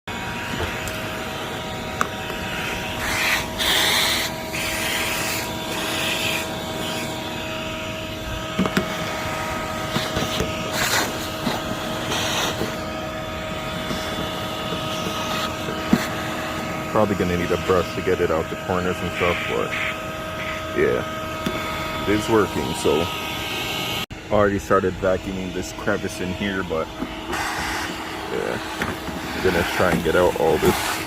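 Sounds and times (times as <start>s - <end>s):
vacuum cleaner running: 0.1s - 31.0s.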